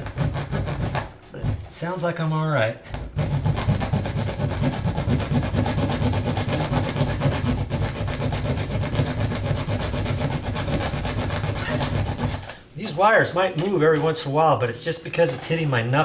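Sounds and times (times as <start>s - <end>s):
hacksaw sawing through nail: 0.0s - 1.8s, 3.2s - 12.6s.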